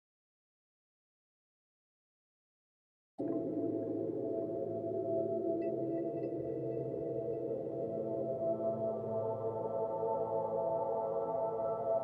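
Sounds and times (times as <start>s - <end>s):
ambient drone music: 3.2s - 12.0s.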